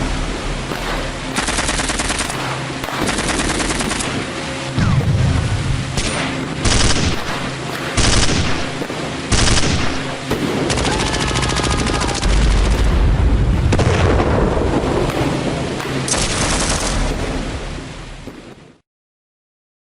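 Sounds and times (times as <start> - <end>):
deep rumble: 0.0 - 18.3
rapid automatic gunfire: 0.7 - 5.0, 5.9 - 12.9, 15.0 - 17.5
gunshot bursts: 0.7 - 17.5.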